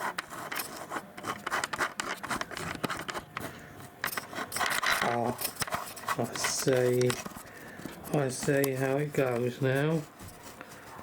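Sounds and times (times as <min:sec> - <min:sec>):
plastic clicks and scrapes: 0:00.0 - 0:09.6.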